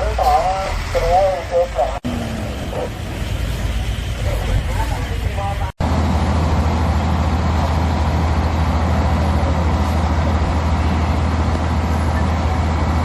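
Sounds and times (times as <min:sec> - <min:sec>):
heavy engine humming: 0:00.0 - 0:13.0.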